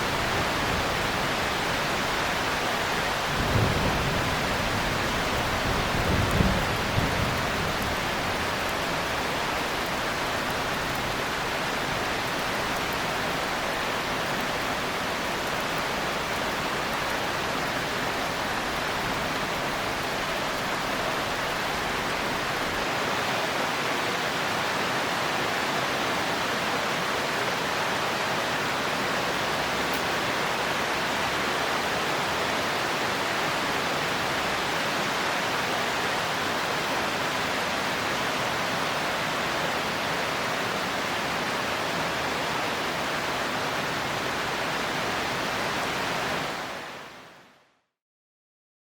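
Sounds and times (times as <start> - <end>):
heavy rain falling: 0.0 - 47.6
thunder rumbling and cracking: 3.1 - 9.2.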